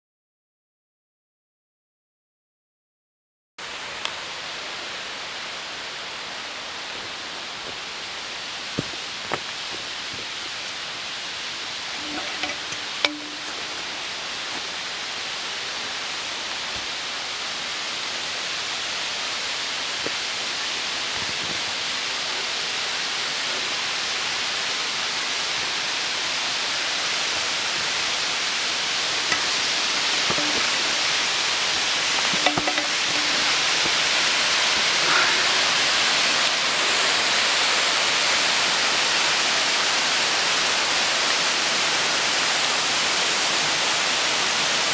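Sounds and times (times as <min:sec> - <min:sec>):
waterfall rushing: 0:03.7 - 0:44.9
footsteps on rock: 0:08.7 - 0:10.4.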